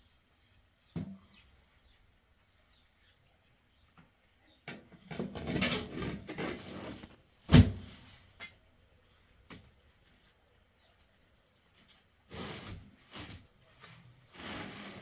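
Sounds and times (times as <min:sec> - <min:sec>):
rough handling and rustling: 0:05.4 - 0:08.5.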